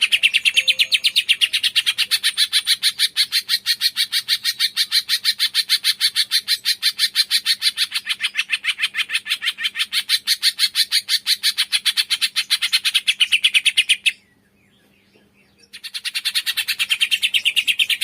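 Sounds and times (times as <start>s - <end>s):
bird calling sharp high notes: 0.0s - 2.4s.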